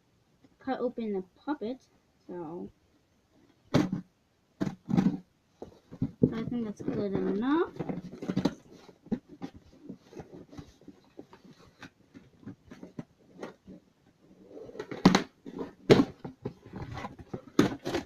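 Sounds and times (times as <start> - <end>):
cardboard and plastic packaging rustling: 4.6 - 18.0.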